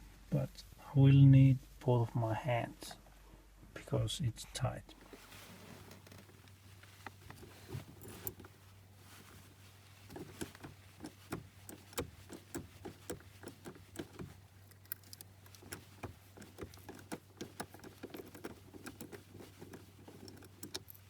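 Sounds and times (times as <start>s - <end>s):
light metallic clicks and taps: 10.0s - 21.0s.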